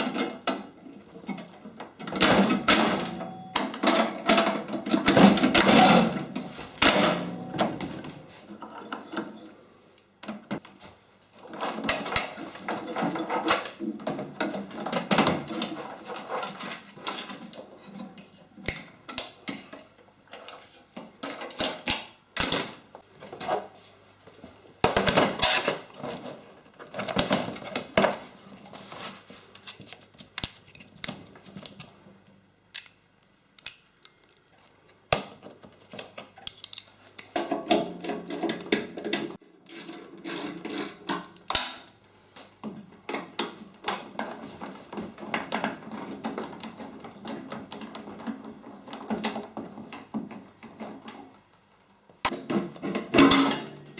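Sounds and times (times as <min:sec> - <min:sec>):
tools clicking and clattering: 0:32.7 - 0:34.5, 0:35.6 - 0:41.9.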